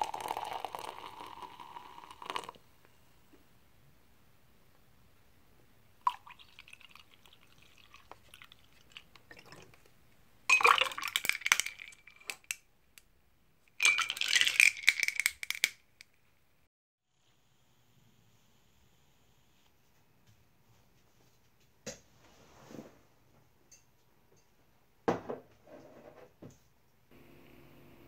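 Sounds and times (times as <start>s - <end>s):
small hard pieces rattling in container: 13.8s - 15.7s.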